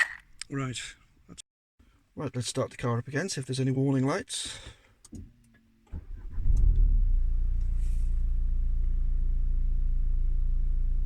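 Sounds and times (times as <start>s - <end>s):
car engine starting and idling: 5.5s - 11.0s.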